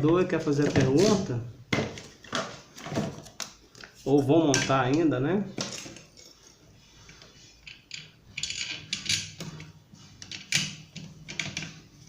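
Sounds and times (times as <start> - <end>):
small metal parts clinking: 7.6 - 11.8.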